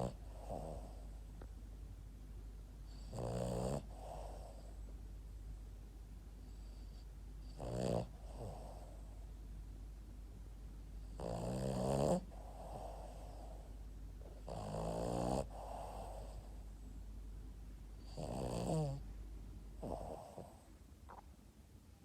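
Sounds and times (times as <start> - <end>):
dog snoring: 0.0 - 1.2, 2.8 - 4.9, 6.4 - 9.2, 11.0 - 16.8, 18.0 - 19.0, 19.8 - 21.2
dog breathing softly: 0.0 - 1.3, 3.8 - 5.0, 6.4 - 9.4, 12.1 - 17.1, 19.8 - 20.9.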